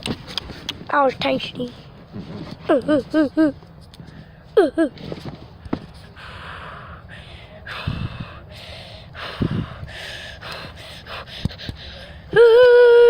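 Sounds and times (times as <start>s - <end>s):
person breathing heavily: 6.0s - 12.4s.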